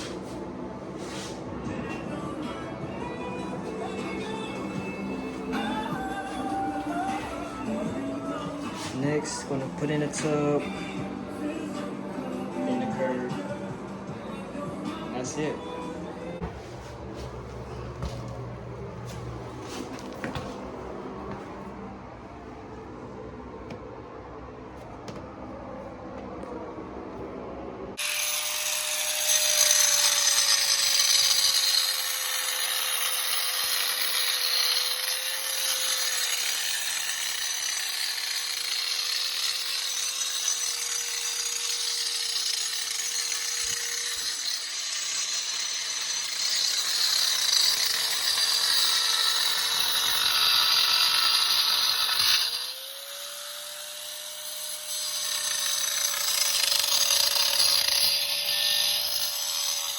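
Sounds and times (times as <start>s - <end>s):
electric power tool cutting: 28.0s - 59.9s.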